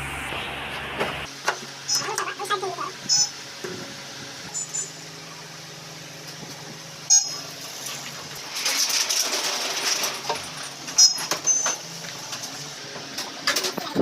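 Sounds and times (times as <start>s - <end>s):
low hum: 0.0s - 1.3s.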